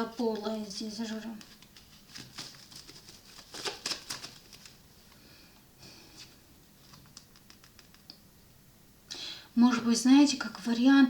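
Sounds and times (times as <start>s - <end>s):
cards rustling: 0.1s - 4.8s.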